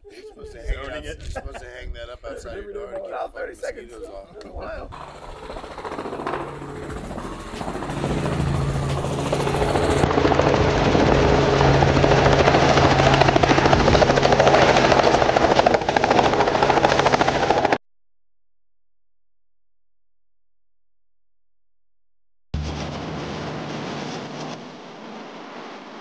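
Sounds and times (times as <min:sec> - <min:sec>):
helicopter rotor and engine: 0:04.6 - 0:17.8, 0:22.6 - 0:26.0.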